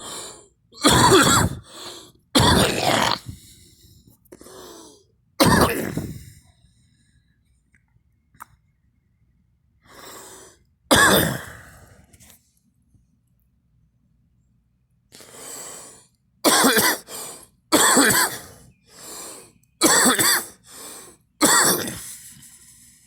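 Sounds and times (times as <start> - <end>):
person coughing: 0.8 - 1.7, 2.4 - 3.4, 5.4 - 6.2, 10.9 - 11.8, 16.5 - 17.1, 17.8 - 18.5, 19.8 - 20.6, 21.4 - 22.1.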